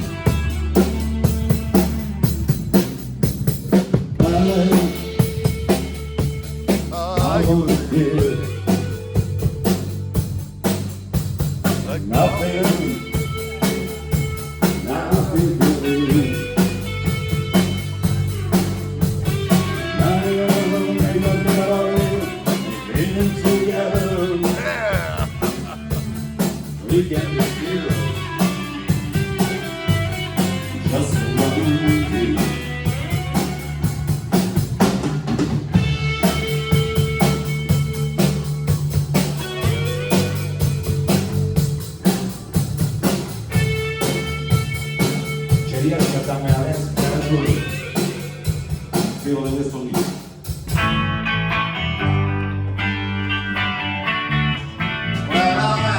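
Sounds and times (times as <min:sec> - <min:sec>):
blues band playing: 0:00.0 - 0:55.9
person singing: 0:04.2 - 0:05.4, 0:06.8 - 0:09.0, 0:11.8 - 0:16.8, 0:19.5 - 0:26.2, 0:26.8 - 0:28.6, 0:30.7 - 0:33.5, 0:55.2 - 0:55.9.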